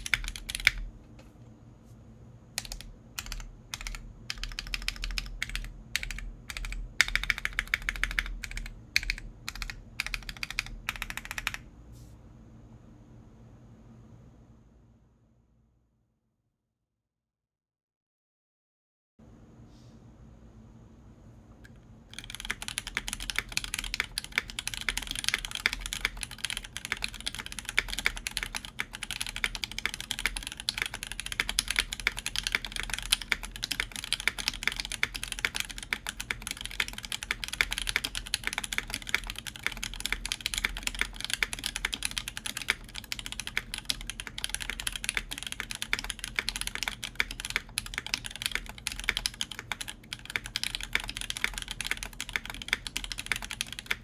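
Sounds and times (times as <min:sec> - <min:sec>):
mechanical keyboard typing: 0:00.0 - 0:00.9, 0:02.6 - 0:11.7, 0:21.7 - 0:54.0
faint low desk rumble: 0:00.0 - 0:15.2.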